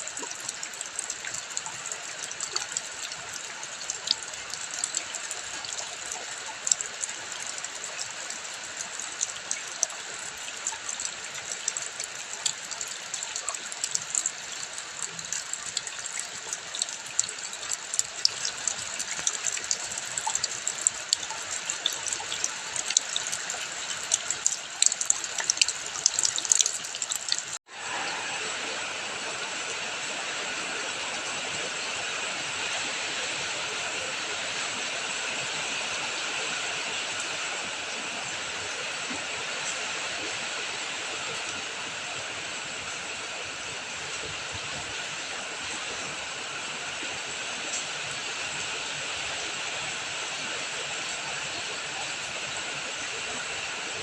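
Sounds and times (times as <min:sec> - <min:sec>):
rain and running water: 0:00.0 - 0:54.0
drops splashing: 0:10.3 - 0:27.6.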